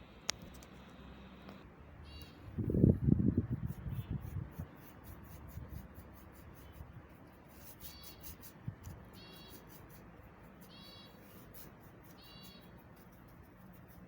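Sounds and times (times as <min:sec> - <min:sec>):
short high bird chirps: 0:02.0 - 0:02.4, 0:07.8 - 0:08.3, 0:09.1 - 0:09.8, 0:10.6 - 0:11.4, 0:12.1 - 0:12.8
scratchy rubbing and handling: 0:02.8 - 0:14.0.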